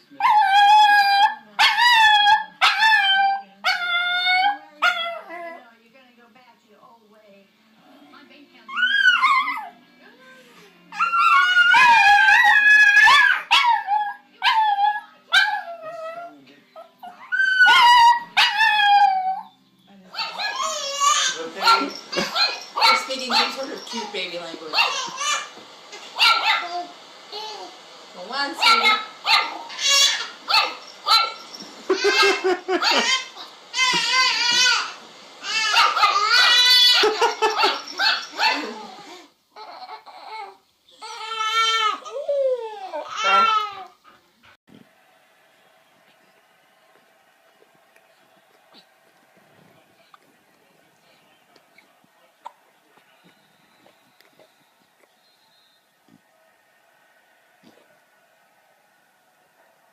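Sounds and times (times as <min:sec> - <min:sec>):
dog whining: 0:00.2 - 0:05.6, 0:08.7 - 0:19.6, 0:20.2 - 0:27.7, 0:28.6 - 0:44.1
dog howling: 0:10.9 - 0:19.5, 0:28.6 - 0:40.6.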